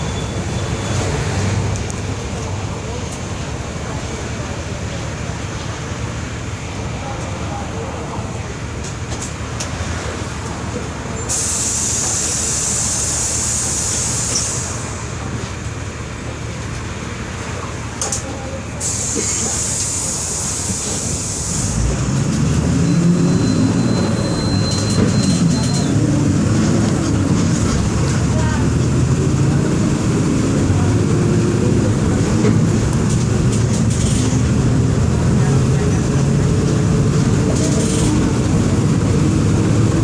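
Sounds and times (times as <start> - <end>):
bus engine rumble: 0.0 - 40.0
loud air hiss: 11.3 - 15.0, 18.8 - 21.8.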